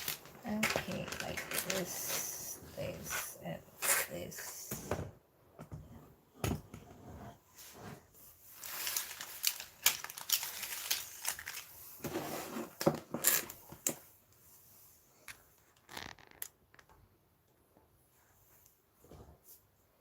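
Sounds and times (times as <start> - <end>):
packaging crinkling: 0.0 - 2.5, 8.6 - 11.8.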